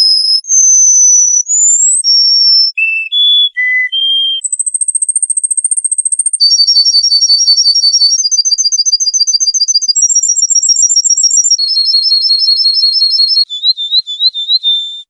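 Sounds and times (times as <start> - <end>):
songbird singing: 0.0 - 15.0.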